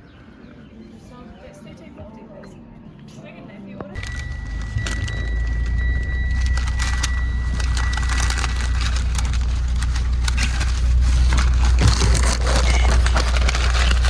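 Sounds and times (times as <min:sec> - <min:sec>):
crackling and crunching: 0:04.0 - 0:14.0
steady low rumble: 0:04.0 - 0:14.0.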